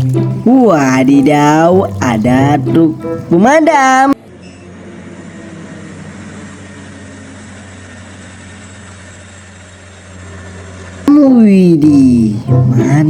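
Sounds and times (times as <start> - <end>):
small motor humming: 4.3 - 11.5.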